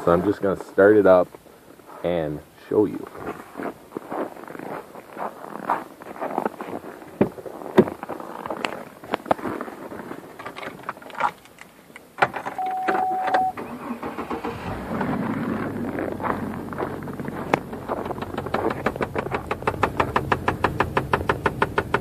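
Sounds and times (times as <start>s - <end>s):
clicks and knocks entering vehicle: 10.4s - 13.5s, 17.5s - 22.0s
car engine cranking and starting: 10.4s - 22.0s
car engine idling: 12.2s - 22.0s
electronic chime: 12.5s - 13.6s.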